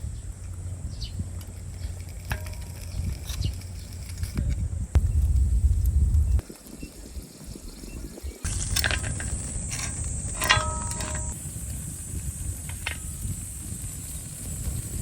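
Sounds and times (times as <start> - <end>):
steady high hiss: 4.9 - 15.0
metal utensil clinking on cookware: 8.7 - 11.4.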